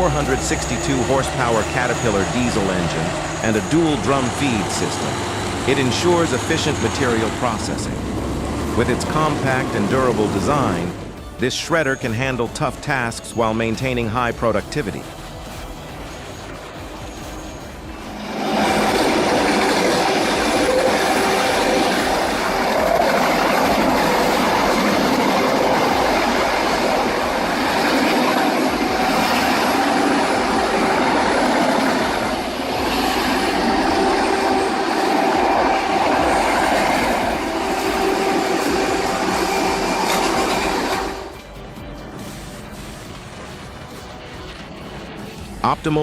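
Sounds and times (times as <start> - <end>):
industrial shredder grinding: 18.0 - 41.2.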